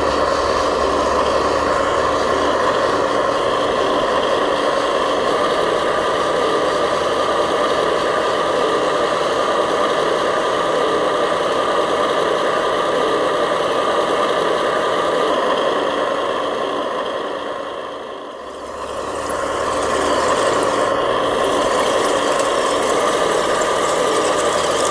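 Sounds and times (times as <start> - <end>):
remote control truck motor hum: 18.4 - 24.9.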